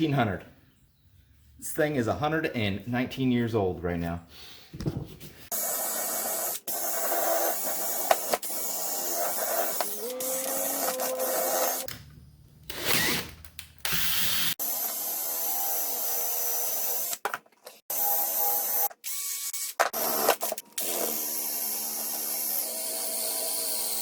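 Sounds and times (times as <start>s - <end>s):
power drill grinding metal: 5.5s - 11.9s.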